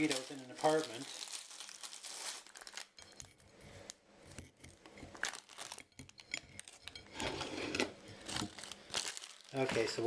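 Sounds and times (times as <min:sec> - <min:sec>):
plastic packaging crinkling: 0:00.0 - 0:04.0, 0:05.1 - 0:07.2, 0:07.8 - 0:10.0.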